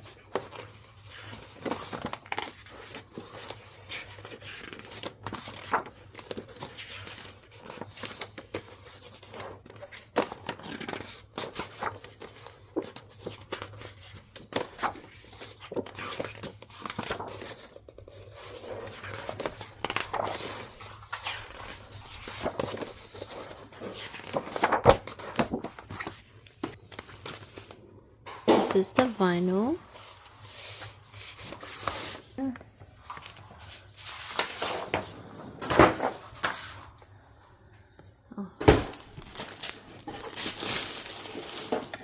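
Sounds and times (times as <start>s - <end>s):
packaging crinkling and tearing: 38.8s - 42.0s.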